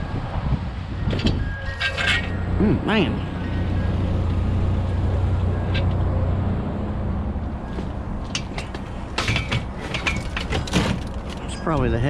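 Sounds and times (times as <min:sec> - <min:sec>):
truck engine humming: 0:00.8 - 0:11.8
clatter of knocks: 0:07.7 - 0:11.6.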